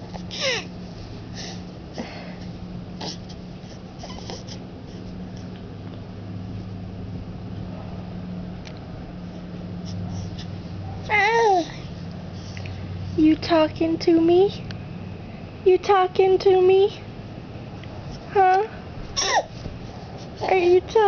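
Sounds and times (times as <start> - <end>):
steady low hum: 0.0 - 21.0
baby cooing: 11.1 - 11.8.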